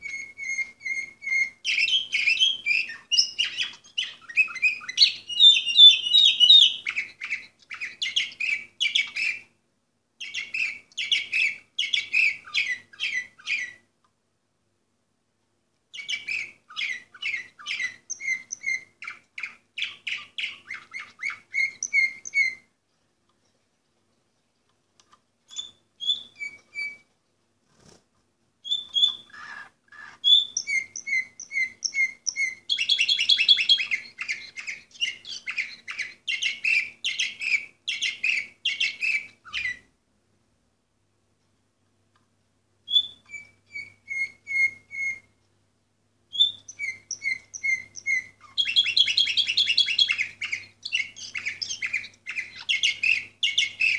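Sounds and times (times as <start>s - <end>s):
canary singing with trills: 0.0s - 9.6s, 10.2s - 13.9s, 15.9s - 22.7s, 25.5s - 27.1s, 28.6s - 39.9s, 42.9s - 45.4s, 46.3s - 53.9s.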